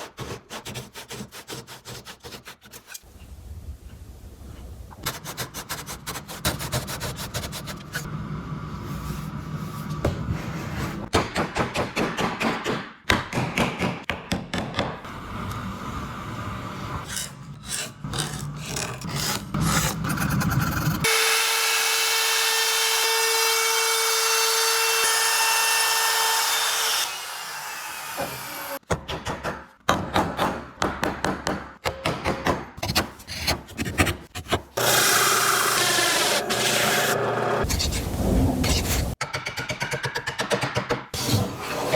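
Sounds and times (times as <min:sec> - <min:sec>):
hand tool rasping wood: 0:00.0 - 0:03.0.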